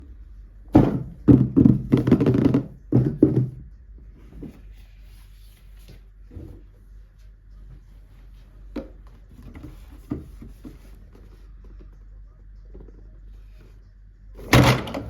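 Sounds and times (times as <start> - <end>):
knocks and handling noises: 0.7 - 4.8, 8.6 - 12.0, 14.4 - 15.0.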